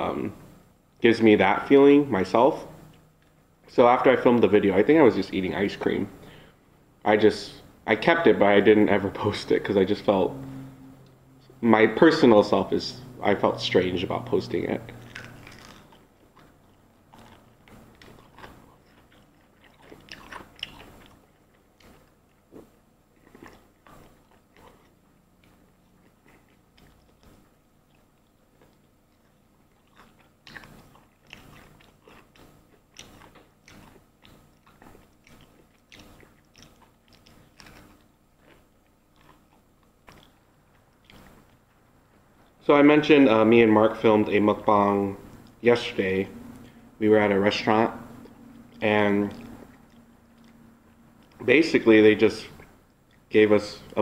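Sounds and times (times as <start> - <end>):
person chewing with crunches: 14.8 - 42.6, 47.9 - 51.5, 52.5 - 54.0.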